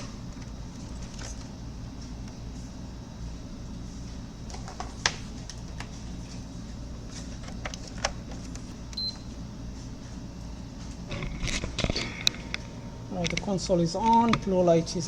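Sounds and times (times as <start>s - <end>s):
steady low hum: 0.0s - 15.0s
cables and console clicking: 7.4s - 9.3s, 11.2s - 14.6s.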